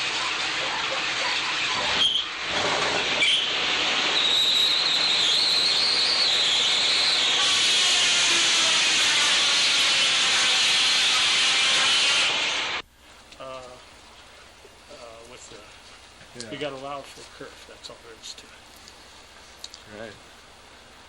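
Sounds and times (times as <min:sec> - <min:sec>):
saw cutting through log: 0:00.0 - 0:12.8.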